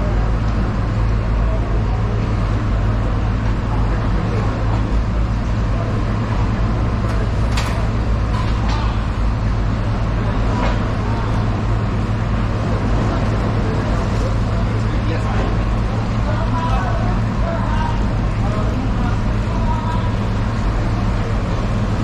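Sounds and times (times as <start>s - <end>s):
low engine-like rumble: 0.0s - 22.0s.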